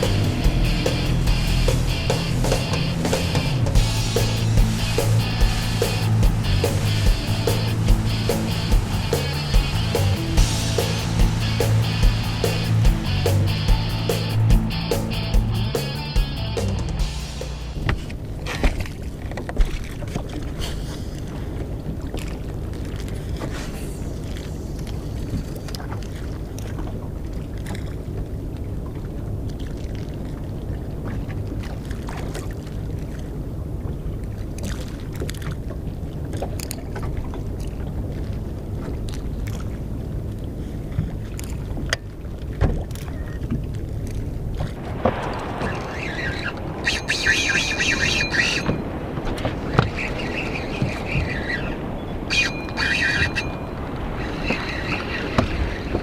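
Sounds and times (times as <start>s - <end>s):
boat motor running: 0.0s - 18.2s.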